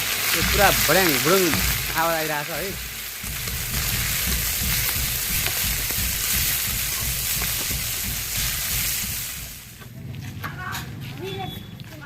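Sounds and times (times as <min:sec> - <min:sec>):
spices sizzling in hot oil: 0:00.0 - 0:09.8
low knocks: 0:02.7 - 0:09.6.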